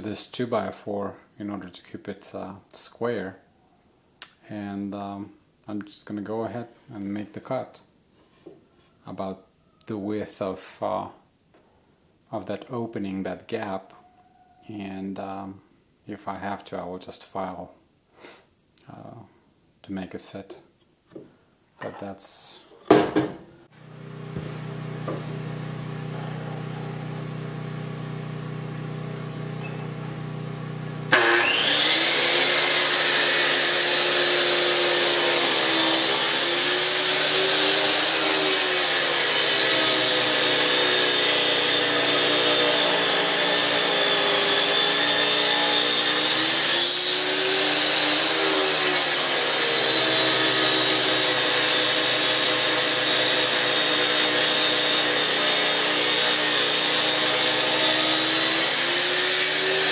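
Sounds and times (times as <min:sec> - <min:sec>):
electric saw cutting wood: 0:23.8 - 0:59.9.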